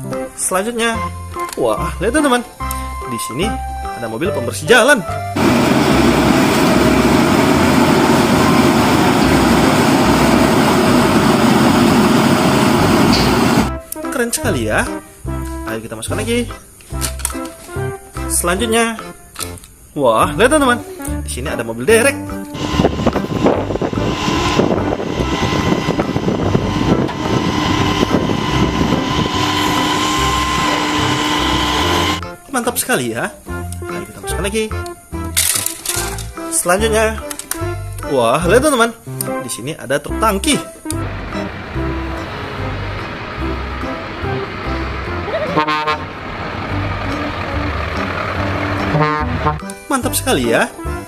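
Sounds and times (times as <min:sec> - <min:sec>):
engine running with rough rumble: 0:05.4 - 0:13.8, 0:22.6 - 0:32.2, 0:40.9 - 0:49.6.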